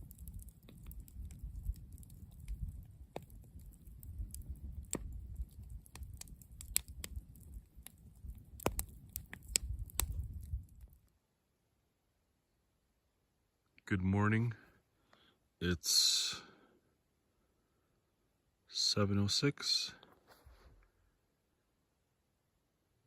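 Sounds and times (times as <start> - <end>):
campfire crackling: 0.0 - 11.1.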